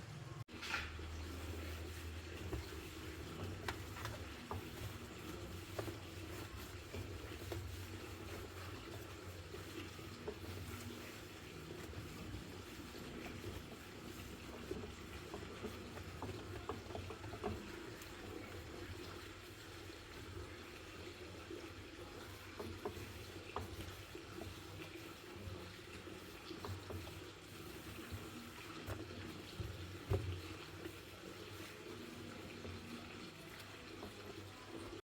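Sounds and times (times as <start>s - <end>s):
water running: 0.0s - 35.0s.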